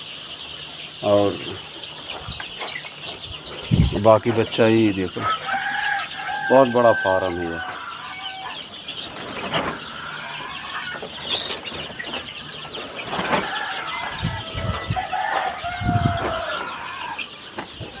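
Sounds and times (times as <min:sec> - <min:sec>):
chicks peeping: 0:00.0 - 0:18.0
hens clucking: 0:00.0 - 0:18.0
low thumps: 0:03.6 - 0:04.1.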